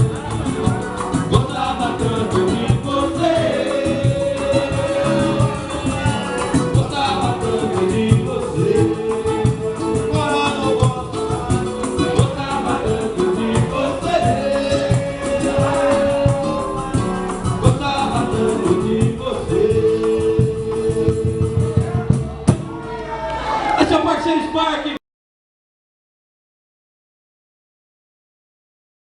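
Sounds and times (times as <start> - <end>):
rapid hand percussion: 0.0 - 23.0
voices singing together: 0.0 - 23.6.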